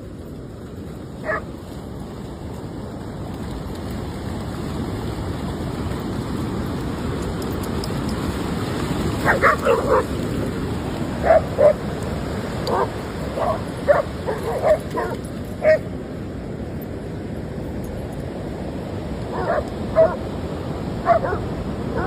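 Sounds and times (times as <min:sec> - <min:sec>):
dog barking and yipping: 0:01.2 - 0:01.4, 0:09.2 - 0:10.1, 0:11.2 - 0:11.8, 0:12.7 - 0:15.8, 0:19.3 - 0:20.2, 0:21.0 - 0:22.0.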